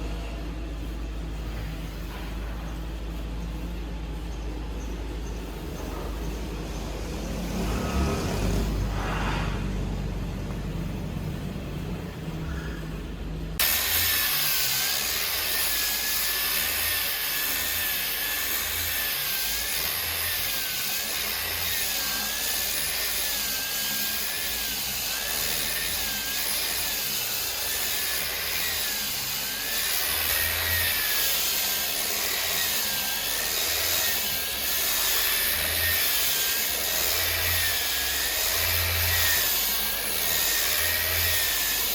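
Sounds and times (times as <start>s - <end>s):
low engine-like rumble: 0.0s - 13.6s
hissing saw with wavering whine: 6.8s - 10.2s, 12.3s - 41.9s.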